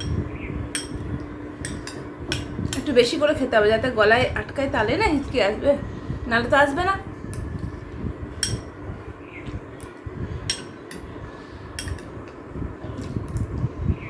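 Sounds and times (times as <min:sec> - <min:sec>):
cutlery clinking on a plate: 0:00.8 - 0:02.5.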